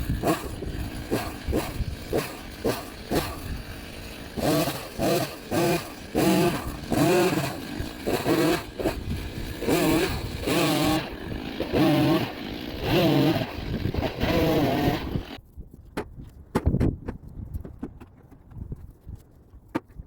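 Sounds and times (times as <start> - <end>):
chainsaw cutting wood: 0.0 - 15.4.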